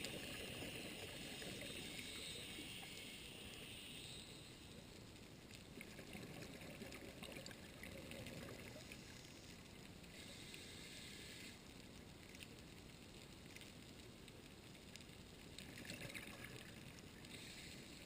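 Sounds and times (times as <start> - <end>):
regulator hiss: 0.0 - 4.8, 8.8 - 11.6, 17.3 - 18.0
underwater bubbling: 0.0 - 18.0
faint clicking: 0.8 - 18.0.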